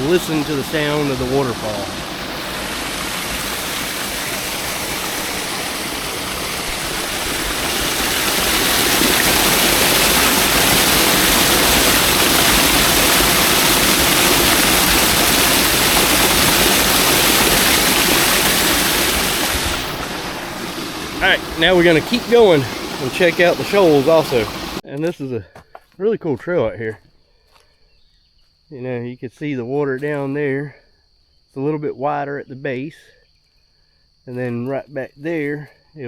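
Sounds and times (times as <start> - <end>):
waterfall rushing: 0.0 - 24.8.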